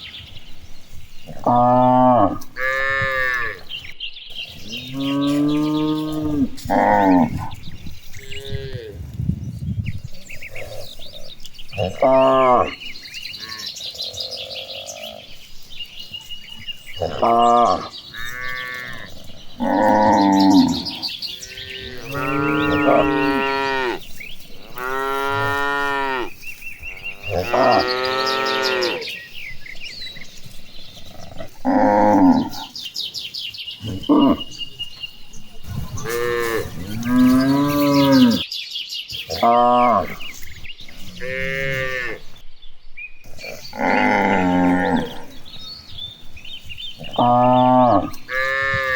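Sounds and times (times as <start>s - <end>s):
cows mooing: 1.3s - 3.7s, 4.6s - 7.6s, 11.8s - 15.3s, 16.9s - 29.2s, 31.0s - 32.7s, 35.8s - 38.5s, 41.0s - 42.3s, 43.4s - 45.4s, 47.0s - 48.9s.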